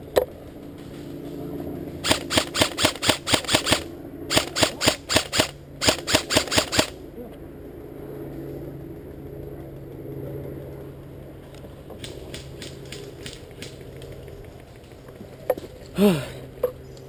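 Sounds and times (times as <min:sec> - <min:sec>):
airsoft gun firing: 0:02.0 - 0:07.0.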